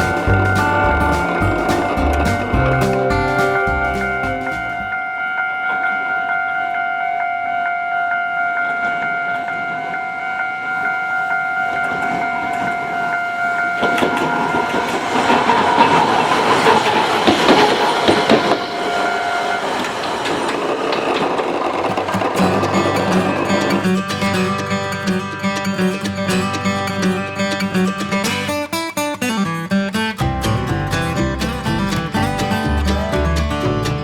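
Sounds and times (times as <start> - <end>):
tram wheels clattering on rails: 0.0 - 5.0, 8.6 - 27.0
level crossing alarm ringing: 0.0 - 26.8.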